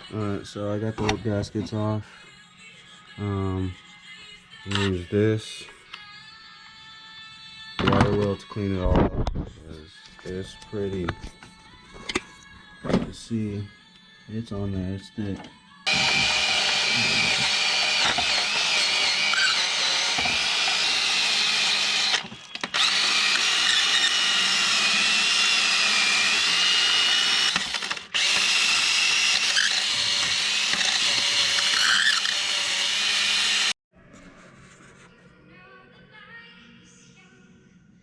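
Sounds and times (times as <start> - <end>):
wire wheel grinding metal: 15.9 - 33.7.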